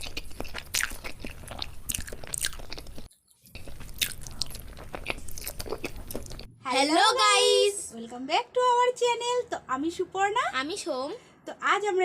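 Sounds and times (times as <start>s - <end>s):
chewing crunchy food: 0.0s - 6.5s.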